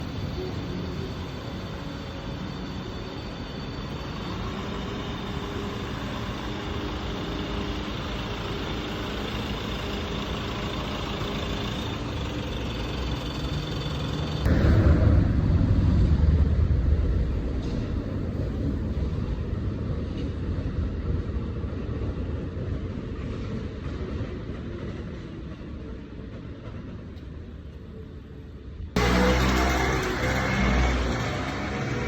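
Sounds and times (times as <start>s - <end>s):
city street ambience: 0.0s - 32.0s
loud low rumble: 14.5s - 19.5s
vehicle engine running: 29.0s - 32.0s.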